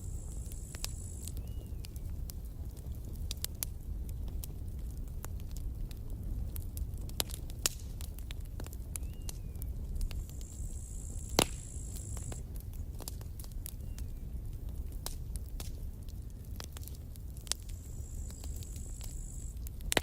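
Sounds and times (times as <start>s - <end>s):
low steady rumble: 0.0s - 13.6s
campfire crackling: 0.0s - 20.0s
thin high hiss: 10.2s - 12.4s.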